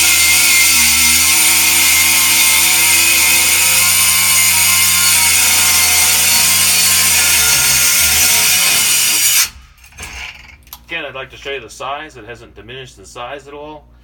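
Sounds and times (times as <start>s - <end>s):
grinder cutting wood: 0.0s - 10.2s.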